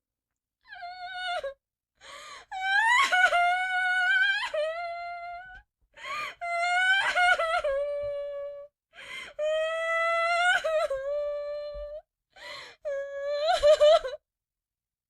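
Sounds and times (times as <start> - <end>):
gasping inhale: 2.0 - 2.5, 9.0 - 9.4, 12.4 - 12.8.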